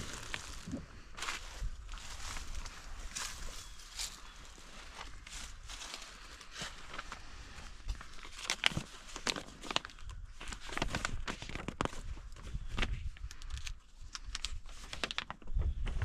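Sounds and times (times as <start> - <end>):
footsteps crunching: 0.0 - 6.9.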